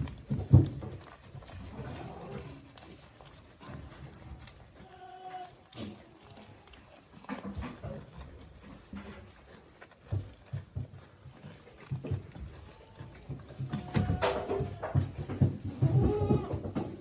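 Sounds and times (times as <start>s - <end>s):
goats thudding and rustling: 0.0s - 17.0s
goat bleat: 4.8s - 6.7s, 13.7s - 15.1s, 15.7s - 16.8s.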